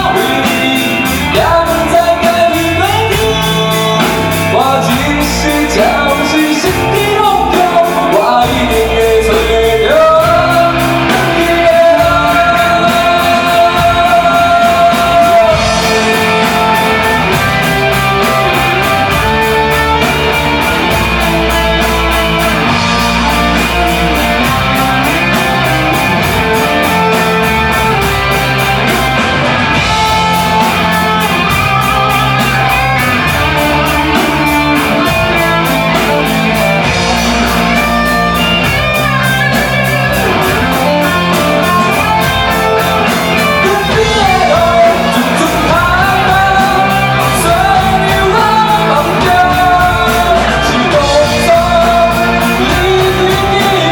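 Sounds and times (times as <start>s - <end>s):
lead guitar line bending: 0.0s - 53.9s
live rock band playing: 0.0s - 53.9s.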